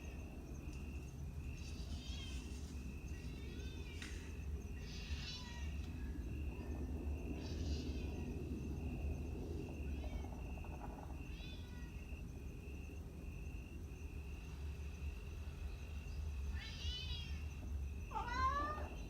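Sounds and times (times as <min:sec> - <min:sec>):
low steady hum: 0:00.0 - 0:19.0
cats meowing: 0:01.9 - 0:02.6, 0:04.8 - 0:05.9, 0:11.2 - 0:12.0, 0:16.5 - 0:17.5, 0:18.1 - 0:19.0.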